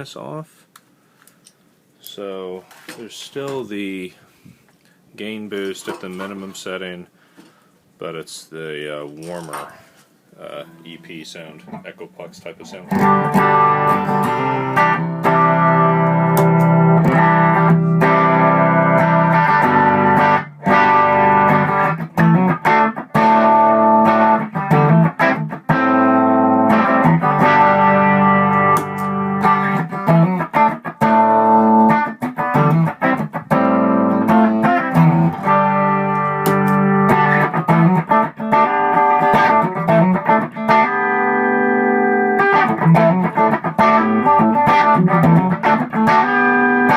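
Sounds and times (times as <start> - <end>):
electric guitar strumming and picking: 9.3 - 12.0, 12.6 - 46.9.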